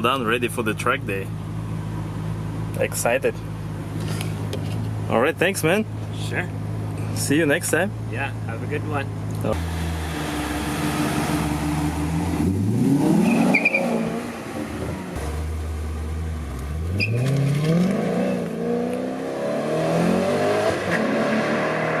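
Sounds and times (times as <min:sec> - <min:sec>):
car engine revving: 0:08.0 - 0:22.0.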